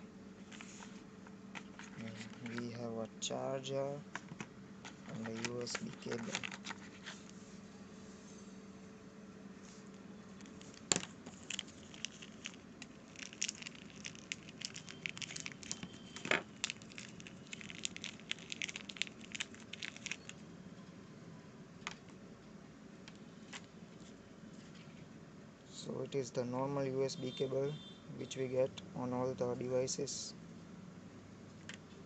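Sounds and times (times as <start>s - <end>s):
plastic packaging crinkling: 4.9s - 7.2s, 10.4s - 20.4s.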